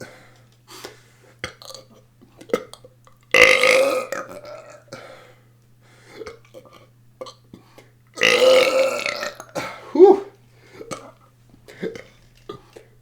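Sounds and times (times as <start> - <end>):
long loud burp: 3.3 - 4.8, 8.2 - 10.3.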